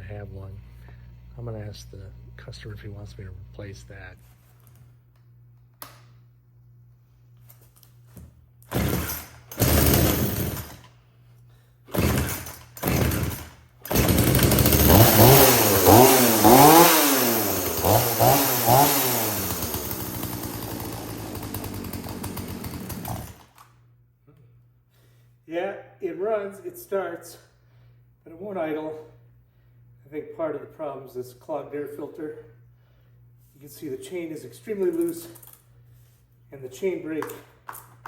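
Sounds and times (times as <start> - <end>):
chainsaw engine revving: 8.7 - 10.9, 11.9 - 23.6
starter cord pulls: 11.9 - 23.7.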